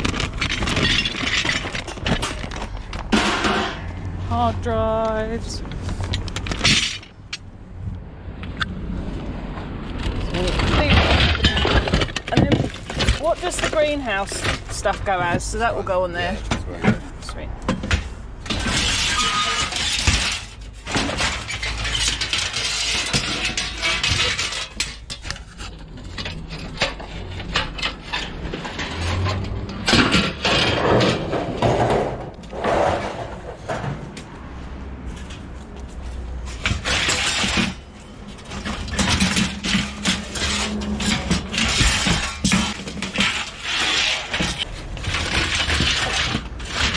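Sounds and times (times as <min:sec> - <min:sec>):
scrap metal clattering onto pile: 0:00.0 - 0:03.9, 0:05.9 - 0:07.2, 0:10.0 - 0:15.7, 0:17.8 - 0:34.1, 0:36.4 - 0:46.9.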